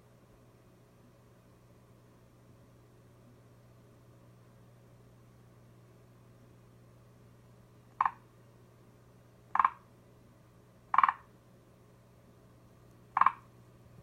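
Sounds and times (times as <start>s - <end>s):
frog clucking croaks: 8.0s - 8.2s, 9.5s - 9.9s, 10.9s - 11.3s, 13.1s - 13.5s.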